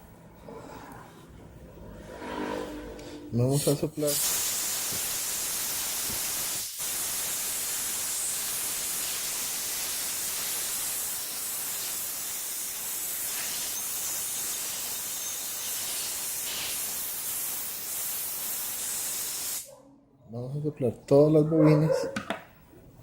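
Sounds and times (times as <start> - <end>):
compressed air blow gun hissing: 4.0 - 19.7.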